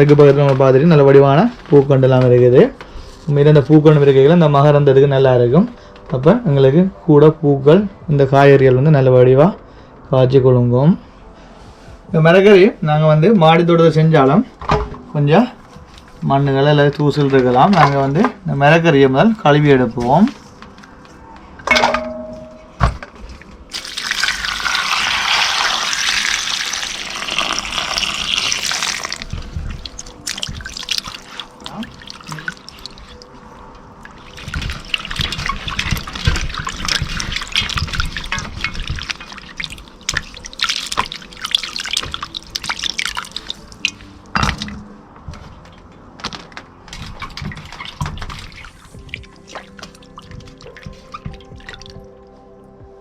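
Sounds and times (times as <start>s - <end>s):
vegetables rinsed by hand: 23.4s - 45.5s, 46.9s - 52.1s
tap water running into sink: 23.7s - 33.3s, 34.1s - 44.7s, 47.1s - 52.0s.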